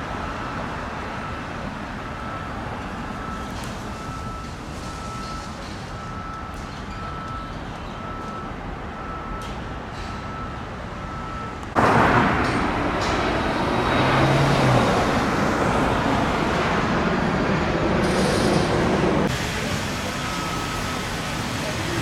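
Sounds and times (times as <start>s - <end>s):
road traffic rush: 0.0s - 22.0s.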